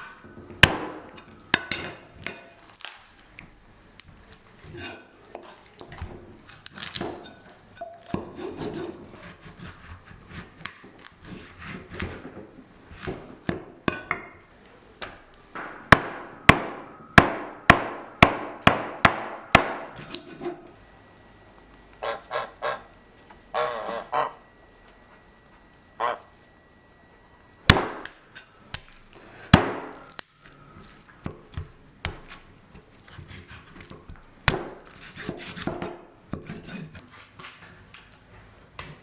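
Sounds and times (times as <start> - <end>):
sharp knocks: 15.6 - 20.0
goose honking: 22.0 - 24.4, 26.0 - 26.3.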